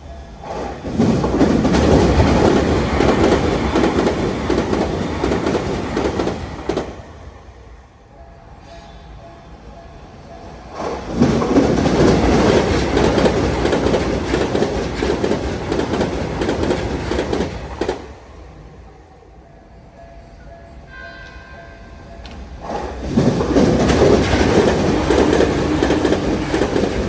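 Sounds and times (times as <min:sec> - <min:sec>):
electric train passing: 0:00.0 - 0:27.0
train clattering over rail joints: 0:00.4 - 0:07.2, 0:10.8 - 0:18.6, 0:22.3 - 0:27.0.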